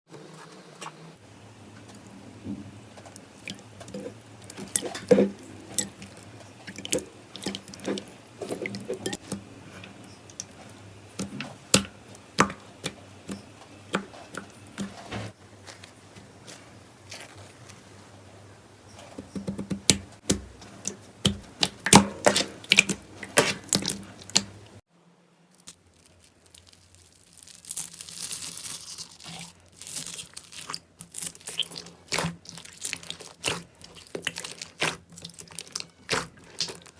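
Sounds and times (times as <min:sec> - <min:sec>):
slime popping and crackling: 0:25.6 - 0:36.9.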